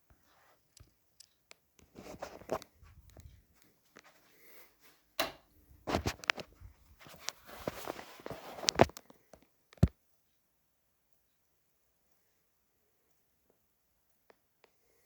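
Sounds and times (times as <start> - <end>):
handling rustles and clicks: 5.2 - 10.0.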